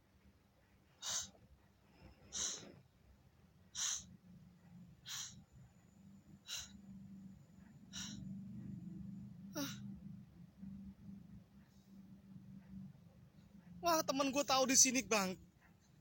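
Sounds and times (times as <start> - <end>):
faint low hum: 0.0 - 16.0
person breathing hissing breaths: 1.0 - 1.4, 2.0 - 2.8, 3.7 - 4.2, 5.0 - 5.4, 6.4 - 7.1, 7.8 - 8.5.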